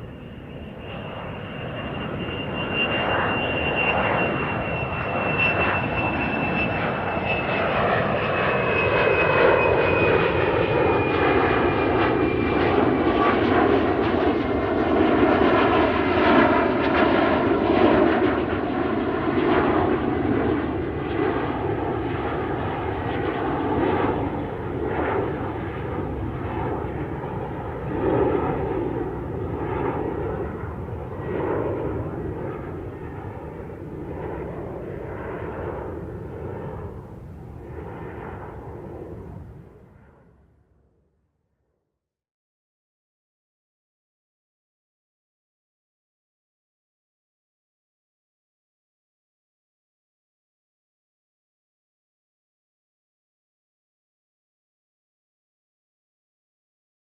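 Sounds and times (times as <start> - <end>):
airplane engines roaring: 0.0 - 40.8.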